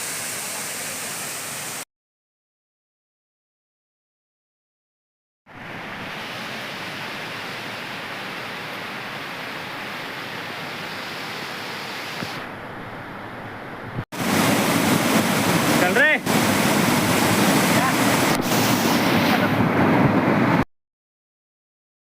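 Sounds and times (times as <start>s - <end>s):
waterfall rushing: 0.0s - 1.8s, 5.6s - 20.6s.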